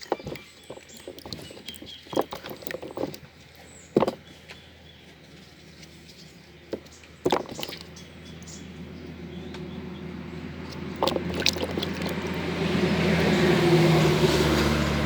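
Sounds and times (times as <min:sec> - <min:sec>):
roots being handled: 0:00.0 - 0:08.0, 0:10.6 - 0:14.7.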